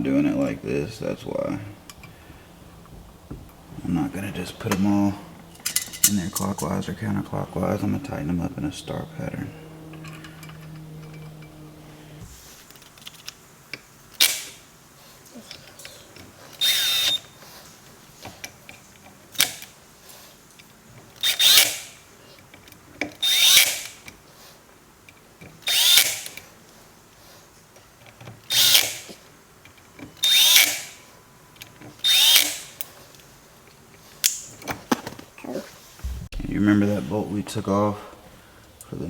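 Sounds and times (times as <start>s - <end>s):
power drill whine: 6.8s - 12.6s, 16.6s - 17.4s, 23.2s - 24.0s, 25.6s - 26.4s, 28.5s - 29.2s, 30.2s - 31.1s, 32.0s - 32.8s.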